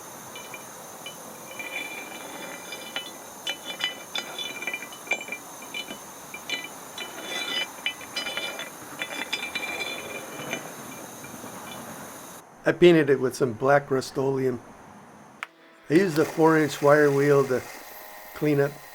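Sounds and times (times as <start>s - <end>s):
steel parts clinking and scraping: 0.3s - 12.4s.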